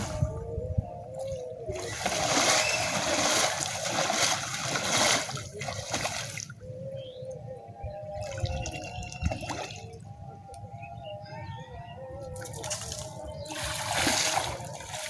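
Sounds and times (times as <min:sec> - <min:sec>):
water splashing and pouring: 0:01.8 - 0:06.5, 0:13.6 - 0:15.0.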